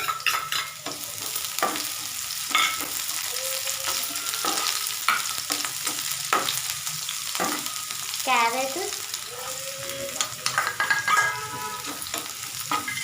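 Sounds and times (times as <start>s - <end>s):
spatula scraping a pan: 0.0s - 6.6s, 9.4s - 13.0s
vegetables sizzling in oil: 0.0s - 13.0s.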